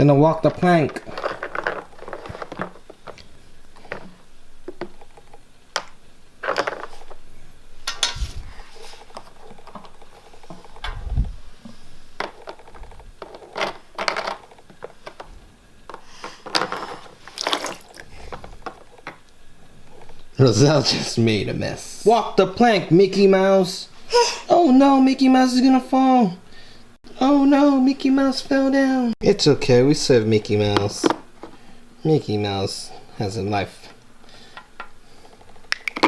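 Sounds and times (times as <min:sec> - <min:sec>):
plastic toys clattering: 0:00.3 - 0:07.2, 0:12.2 - 0:21.1
water splashing and sloshing: 0:17.1 - 0:19.4.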